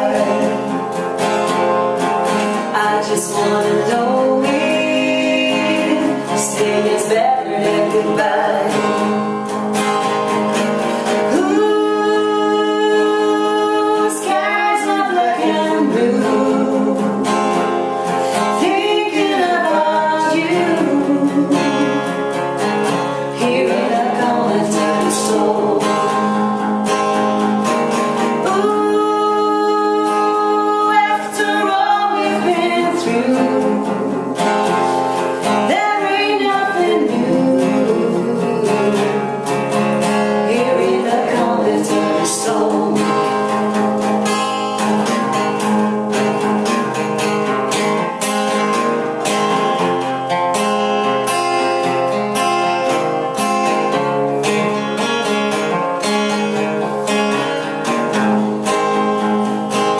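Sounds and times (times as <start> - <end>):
person singing wordlessly: 0.0 - 0.7, 2.7 - 9.3, 11.3 - 17.5, 18.5 - 22.2, 23.3 - 26.6, 28.4 - 34.6, 35.5 - 39.4, 40.4 - 43.8
acoustic guitar strumming: 0.0 - 59.9.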